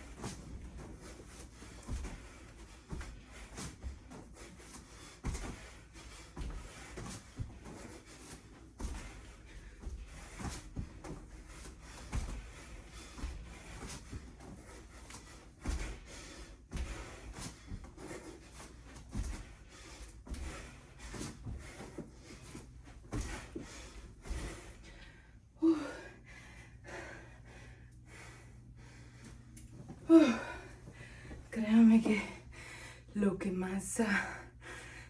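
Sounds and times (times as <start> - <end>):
hands and feet thudding on floor: 0.0 - 25.0
hard breathing: 0.0 - 33.2, 34.0 - 35.0.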